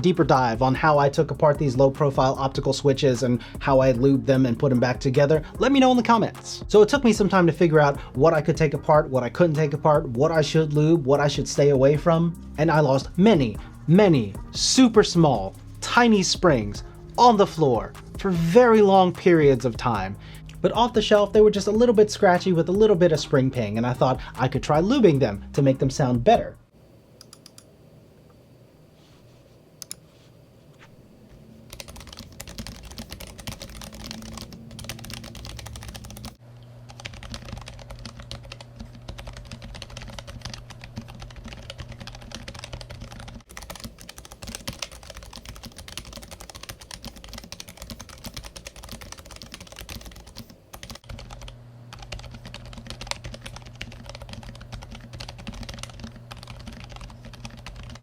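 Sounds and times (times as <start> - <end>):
mechanical keyboard typing: 31.7 - 58.0.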